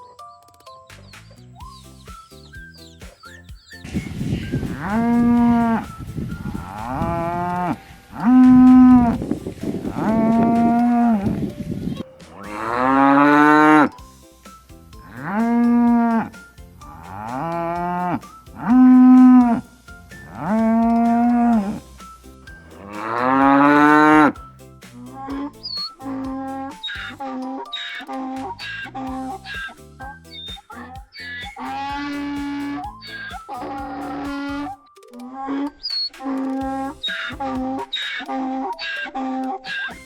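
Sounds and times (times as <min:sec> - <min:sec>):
cow mooing: 0:04.5 - 0:06.0, 0:06.6 - 0:09.2, 0:09.9 - 0:11.3, 0:12.4 - 0:13.9, 0:15.1 - 0:16.3, 0:20.4 - 0:21.7, 0:22.8 - 0:24.4.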